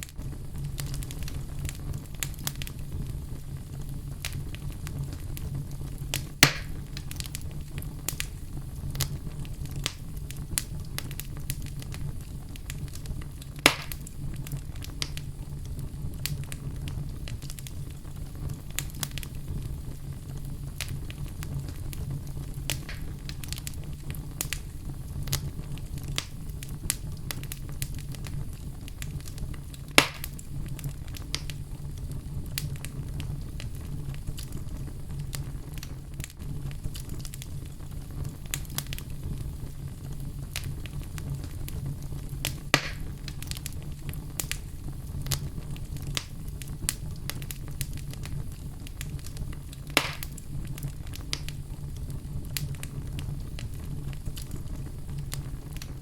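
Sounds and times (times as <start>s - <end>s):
fire crackling and popping: 0.0s - 56.0s
fire flames rumbling: 0.0s - 56.0s.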